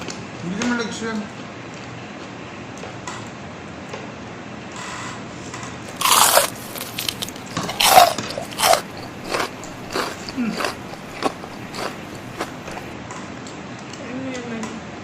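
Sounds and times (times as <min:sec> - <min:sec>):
crunchy chewing: 0:05.9 - 0:13.0.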